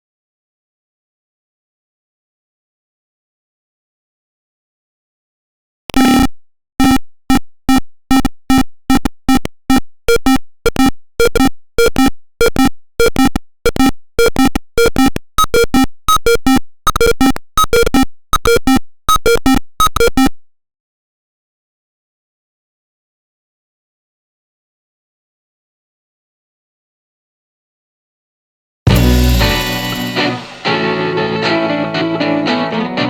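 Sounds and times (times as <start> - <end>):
piezo buzzer beeping: 5.9 - 20.4, 28.9 - 30.6.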